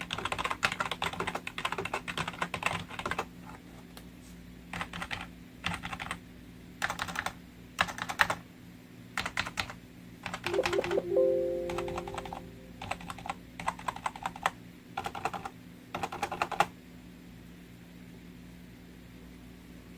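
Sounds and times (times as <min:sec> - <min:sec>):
keyboard typing bursts: 0:00.0 - 0:03.3, 0:04.7 - 0:06.2, 0:06.8 - 0:08.4, 0:09.2 - 0:16.7
short ringing tone: 0:10.5 - 0:12.8.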